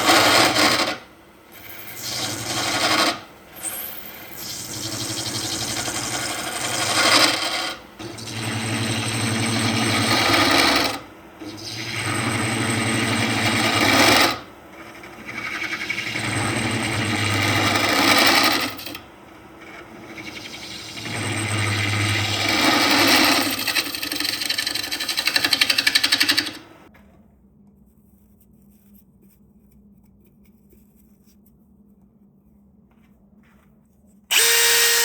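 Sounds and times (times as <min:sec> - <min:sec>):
wood lathe motor humming: 0:00.0 - 0:26.9, 0:34.3 - 0:35.0
abrasive rubbing spinning wood: 0:08.1 - 0:26.6.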